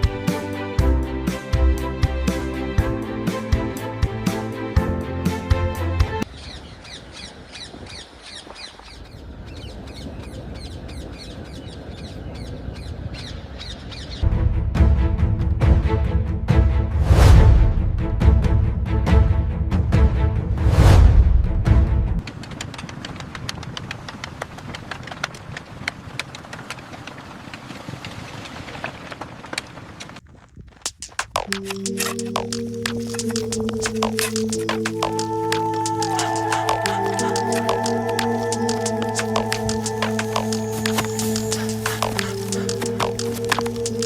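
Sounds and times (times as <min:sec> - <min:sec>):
bird calling: 0:30.9 - 0:44.0.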